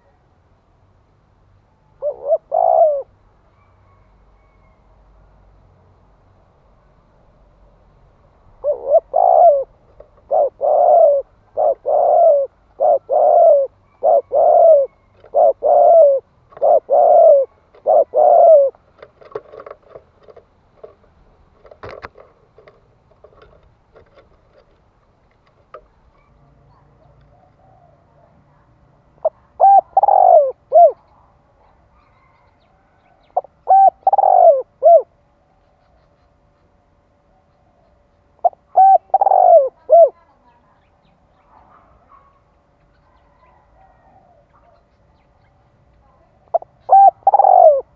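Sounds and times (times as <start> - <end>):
dove cooing: 1.8 - 4.8, 8.6 - 21.0, 26.1 - 35.2, 37.4 - 40.7, 41.4 - 45.1, 46.2 - 47.9.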